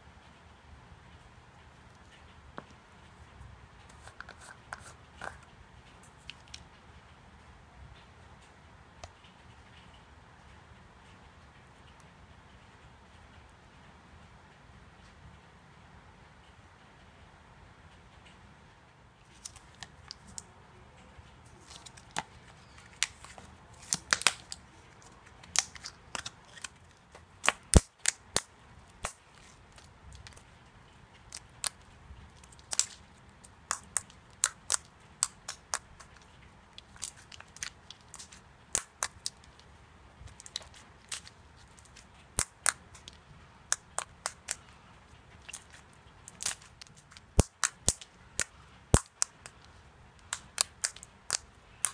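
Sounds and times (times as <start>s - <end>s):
slime squeezed popping and clicking: 32.4s - 33.0s, 33.7s - 36.1s, 36.8s - 39.4s, 42.4s - 44.6s, 45.4s - 49.6s, 50.2s - 51.9s.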